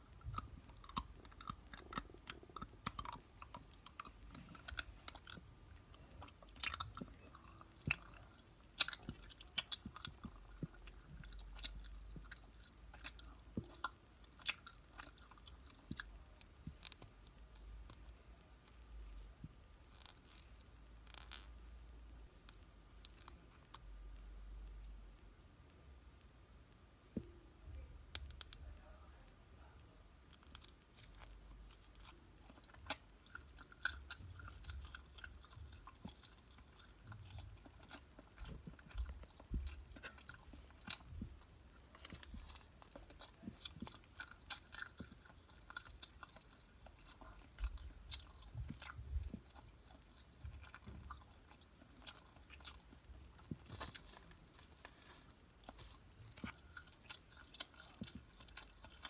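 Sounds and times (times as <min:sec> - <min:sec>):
crunchy snack chewing: 0:00.1 - 0:17.1, 0:30.4 - 0:59.0.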